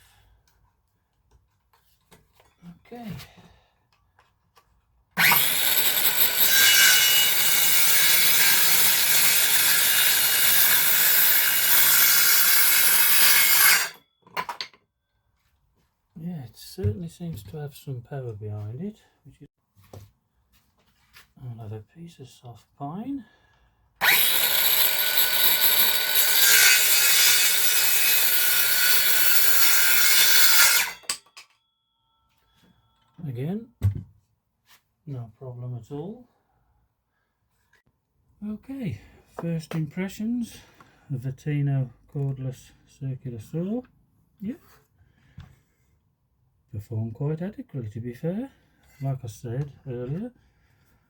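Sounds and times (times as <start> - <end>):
circular saw cutting wood: 5.2 - 14.0, 24.0 - 31.3.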